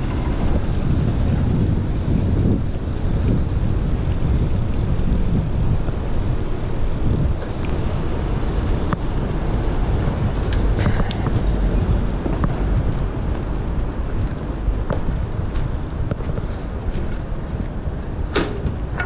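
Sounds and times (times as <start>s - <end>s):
bicycle squeaks and clicks: 0.0s - 17.6s
road noise: 0.0s - 19.0s
wind rumble on microphone: 0.0s - 19.0s.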